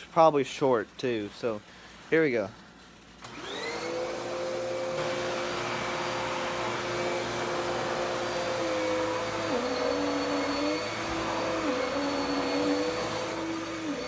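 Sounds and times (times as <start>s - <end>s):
vacuum cleaner motor whining: 3.2s - 14.0s.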